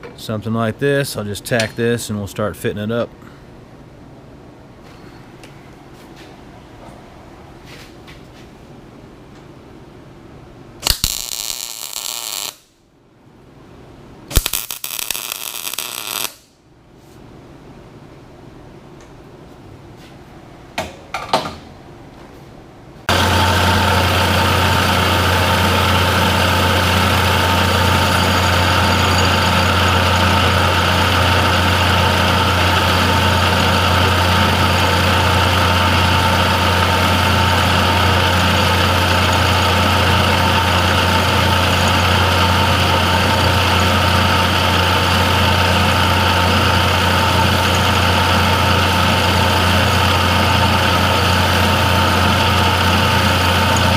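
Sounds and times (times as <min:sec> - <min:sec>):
shop machine humming: 0:23.1 - 0:53.9.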